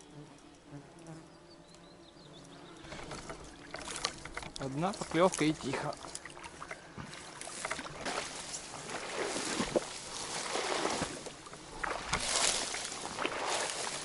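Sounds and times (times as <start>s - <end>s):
water sloshing around wading legs: 2.8s - 14.0s.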